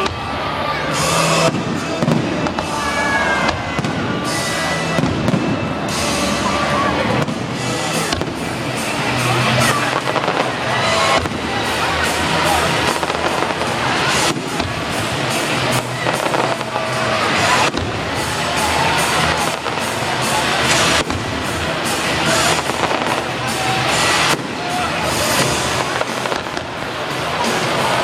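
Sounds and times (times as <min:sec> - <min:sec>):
fireworks bangs and crackling: 0:00.0 - 0:28.0.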